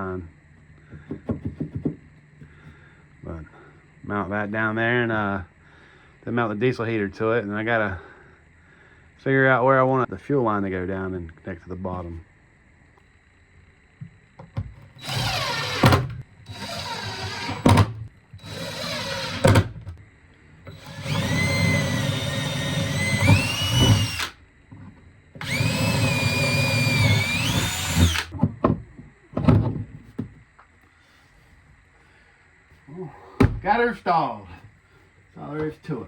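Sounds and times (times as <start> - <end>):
power drill driving screws: 15.0 - 19.7, 20.7 - 24.4, 25.4 - 28.3.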